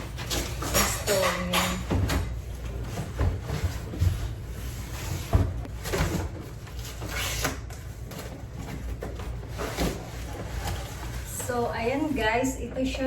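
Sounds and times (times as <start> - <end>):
cardboard rustling and scraping: 2.4 - 12.4.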